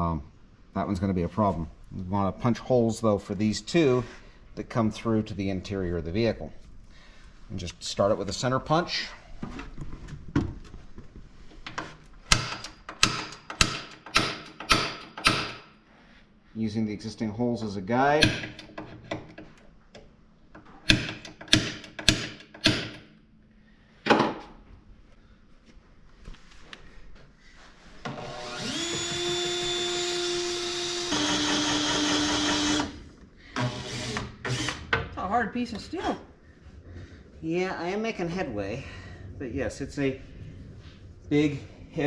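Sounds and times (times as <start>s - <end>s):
center punch striking steel: 12.3s - 15.7s, 18.2s - 18.7s, 20.9s - 23.1s
electric drill boring through steel: 28.1s - 33.0s, 33.6s - 34.9s.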